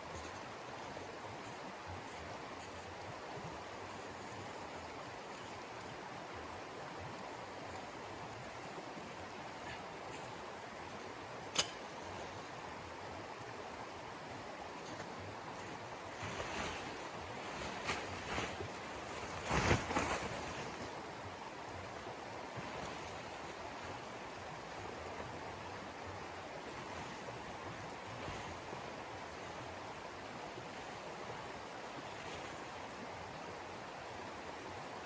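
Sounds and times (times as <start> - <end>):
rustling handling sounds: 14.8 - 21.0.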